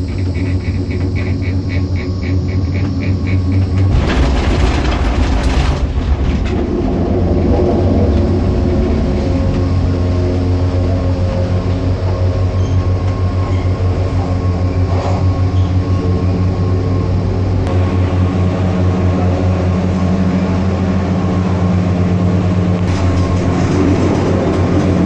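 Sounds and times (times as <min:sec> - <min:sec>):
cable car machinery humming: 0:00.0 - 0:25.0
cable car knock: 0:22.8 - 0:25.0.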